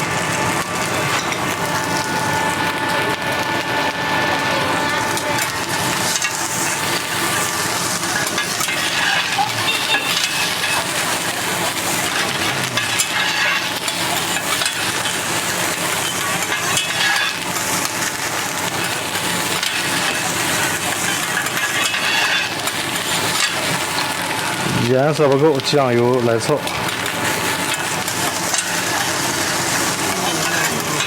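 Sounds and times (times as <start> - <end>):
rice sizzling on a griddle: 0.0 - 31.0
metal spatulas scraping and clinking: 8.2 - 11.0, 21.0 - 23.6.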